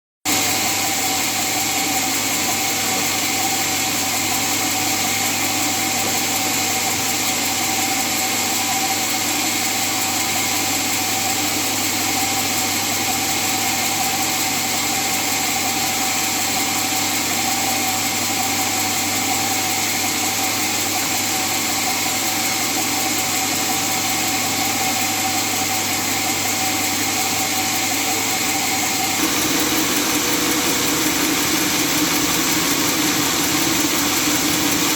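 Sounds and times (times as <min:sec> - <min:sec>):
sawmill machinery humming: 0:28.3 - 0:34.9.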